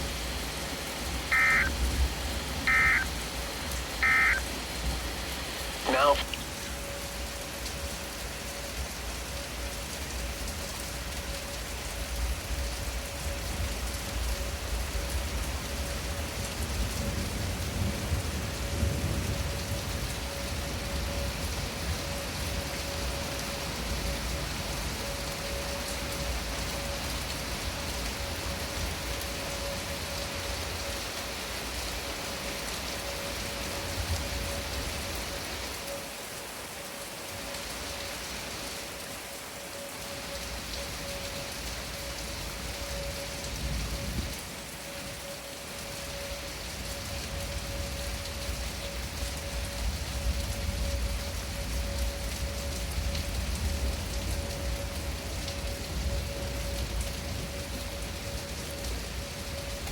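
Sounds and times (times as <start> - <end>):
rain falling: 0.0 - 59.9
faint warning siren tone: 0.9 - 59.9.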